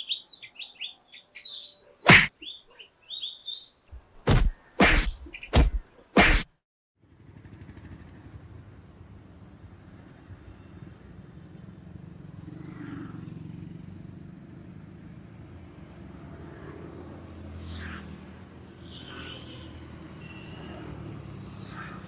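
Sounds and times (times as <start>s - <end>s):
vehicles passing: 0.0s - 22.0s
road traffic rumble: 7.0s - 22.0s.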